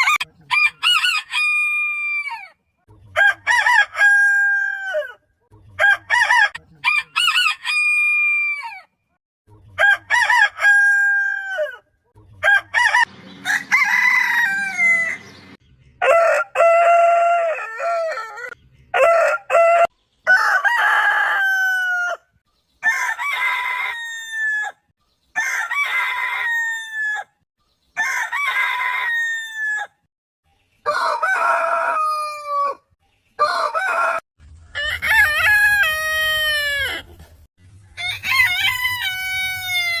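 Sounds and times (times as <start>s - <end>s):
roosters crowing: 0.0s - 5.2s, 5.8s - 8.9s, 9.8s - 11.8s, 12.4s - 27.4s, 28.0s - 30.0s, 30.8s - 40.0s.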